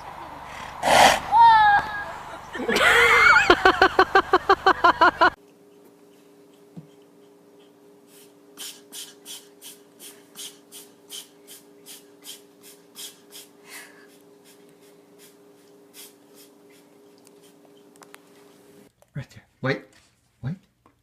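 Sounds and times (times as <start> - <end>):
steady low hum: 0.0 - 20.9
pet breathing in noisy puffs: 0.4 - 1.3, 6.0 - 17.9.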